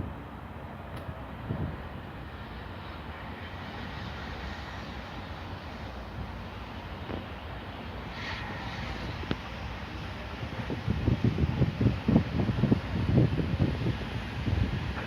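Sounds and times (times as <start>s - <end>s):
steam locomotive rumbling: 0.0s - 15.0s.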